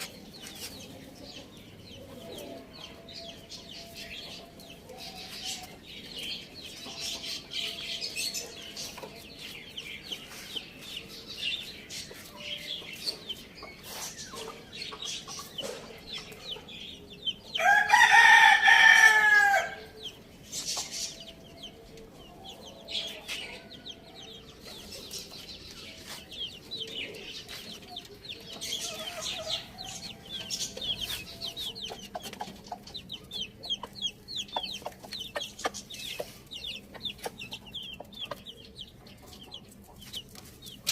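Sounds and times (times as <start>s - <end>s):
hens clucking: 6.4s - 16.7s, 22.7s - 40.9s
rooster crowing: 17.6s - 19.9s.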